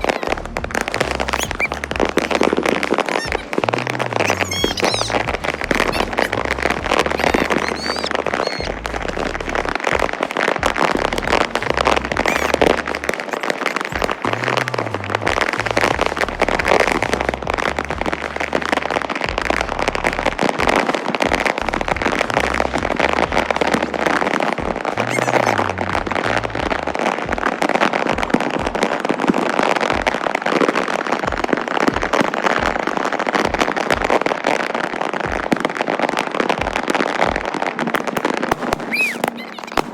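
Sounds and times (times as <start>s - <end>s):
bass-heavy music: 0.0s - 38.9s
firecrackers crackling: 0.0s - 39.9s.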